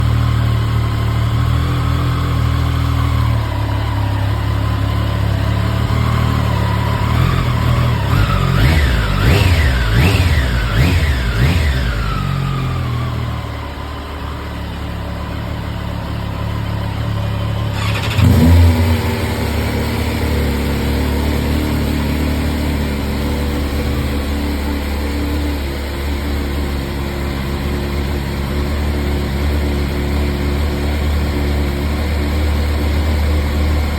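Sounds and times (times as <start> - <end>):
motorcycle engine revving to idle: 0.0 - 33.9
second motorcycle engine starting: 1.7 - 33.9.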